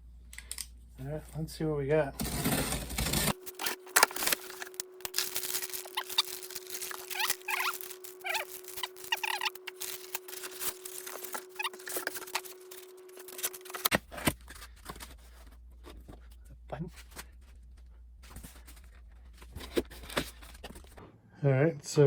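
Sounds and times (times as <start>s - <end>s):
packaging rustling and crinkling: 2.2s - 16.4s, 17.0s - 21.0s
short squeaks: 3.4s - 13.9s.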